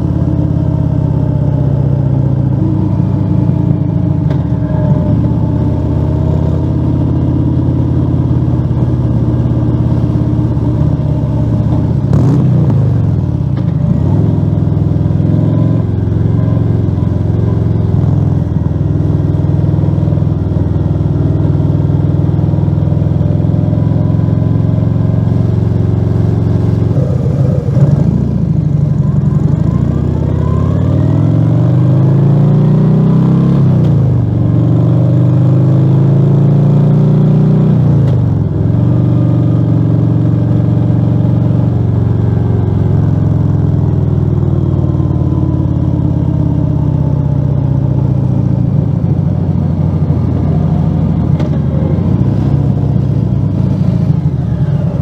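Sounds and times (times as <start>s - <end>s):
motorcycle engine accelerating: 0.0s - 55.0s.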